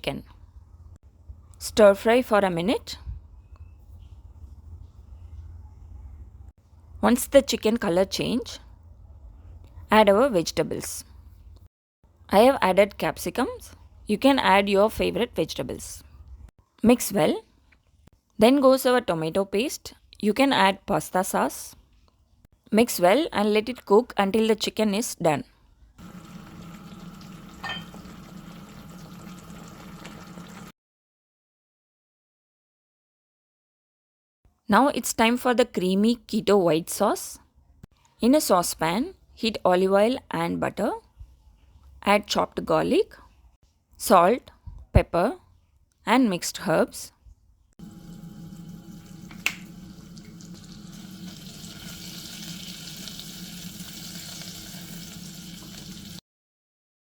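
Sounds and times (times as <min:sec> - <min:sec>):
food sizzling in a frying pan: 0:26.0 - 0:30.7, 0:47.8 - 0:56.2
sharp clink: 0:27.6 - 0:28.0.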